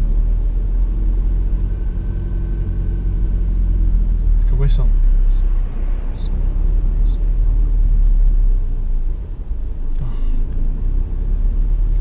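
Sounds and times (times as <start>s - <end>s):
car engine and road rumble: 0.0s - 12.0s.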